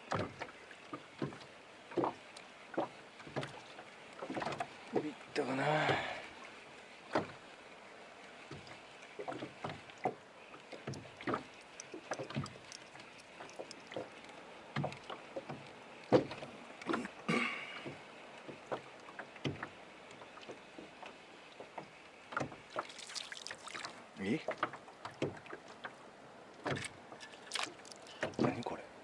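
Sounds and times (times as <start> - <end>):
water slapping boat hull: 0.0 - 29.0
light knocks and clicks: 0.1 - 4.7, 7.1 - 7.4, 8.5 - 17.2, 17.8 - 22.6, 24.5 - 26.0, 26.6 - 28.8.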